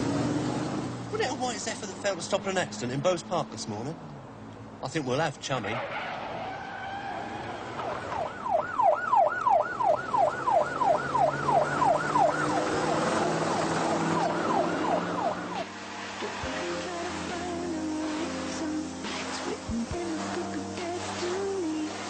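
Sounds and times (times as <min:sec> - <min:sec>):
car engine: 0:00.0 - 0:20.0
police siren yelping: 0:06.5 - 0:15.7.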